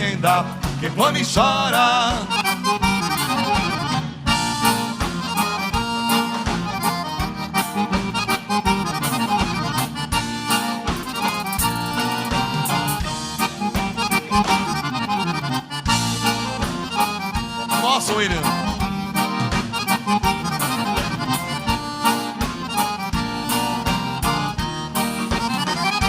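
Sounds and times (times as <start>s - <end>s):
piano accordion melody: 0.0s - 26.0s
steady dance beat: 11.1s - 21.8s.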